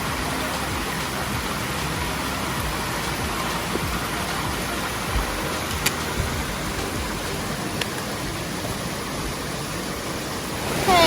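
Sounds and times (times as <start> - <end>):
stream rushing over rocks: 0.0 - 11.0.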